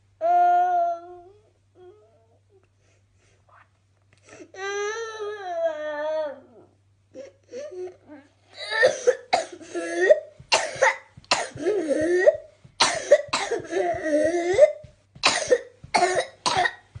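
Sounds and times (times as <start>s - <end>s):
person coughing: 8.7s - 16.9s.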